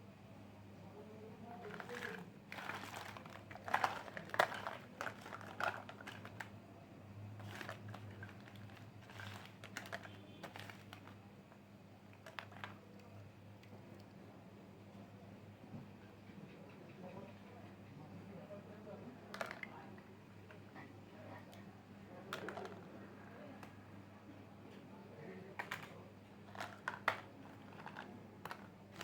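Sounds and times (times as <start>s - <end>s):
plastic toy pieces clicking: 1.7s - 6.5s, 12.2s - 13.1s, 25.6s - 25.9s, 26.5s - 29.0s.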